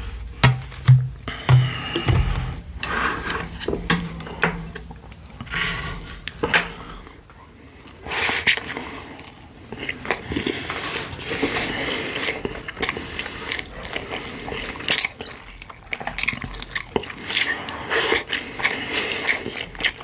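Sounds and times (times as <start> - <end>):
wet chewing: 1.9 - 20.0
slurping: 7.7 - 20.0.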